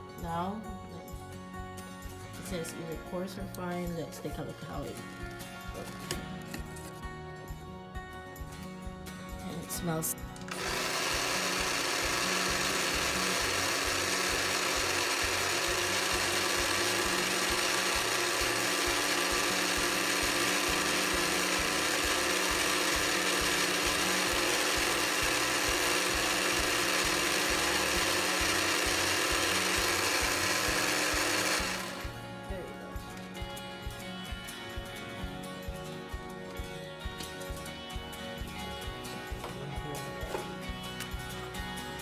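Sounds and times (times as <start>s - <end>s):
guitar backing track: 0.0s - 21.4s, 31.2s - 42.0s
coffee grinder motor whirring: 10.3s - 33.3s.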